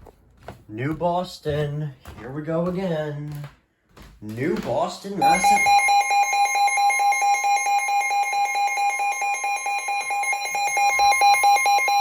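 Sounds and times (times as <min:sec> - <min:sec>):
rapid electronic beeping: 0:08.1 - 0:12.0.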